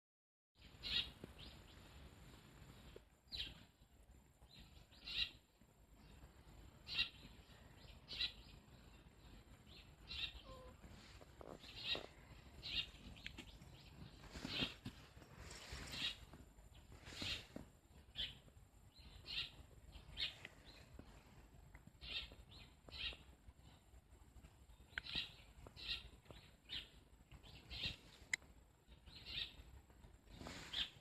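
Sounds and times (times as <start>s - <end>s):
birds chirping: 0.6s - 2.0s, 4.5s - 14.8s, 15.4s - 21.2s, 22.0s - 23.8s, 24.7s - 29.6s.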